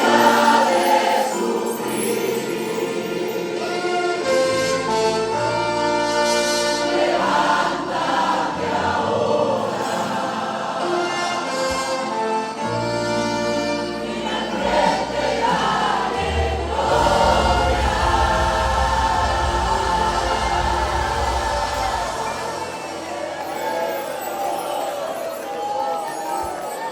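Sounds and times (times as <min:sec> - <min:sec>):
choir singing: 0:00.0 - 0:26.9
instrumental accompaniment: 0:00.0 - 0:26.9
low bass notes: 0:15.1 - 0:22.8.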